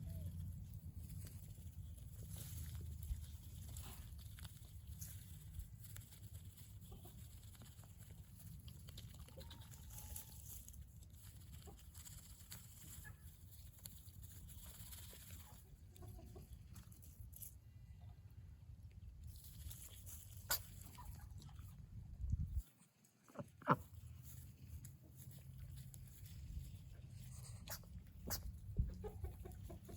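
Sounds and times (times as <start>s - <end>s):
steady low rumble: 0.0s - 9.3s
rustling in grass: 0.0s - 17.6s, 19.2s - 21.2s, 23.8s - 29.9s.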